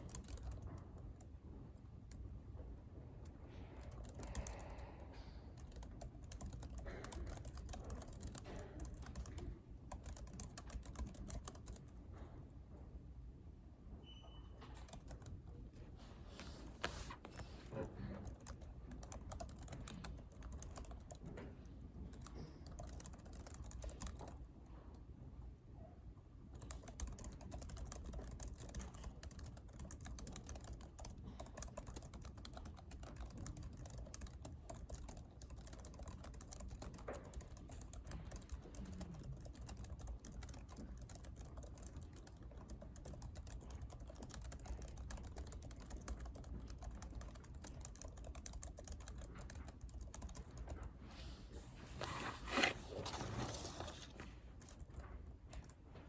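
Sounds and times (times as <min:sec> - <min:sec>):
typing on a keyboard: 0:00.0 - 0:01.3, 0:03.2 - 0:04.9, 0:05.5 - 0:12.0, 0:14.6 - 0:15.6, 0:17.3 - 0:24.4, 0:26.5 - 0:50.9, 0:54.6 - 0:56.0
low room hum: 0:00.0 - 0:56.0.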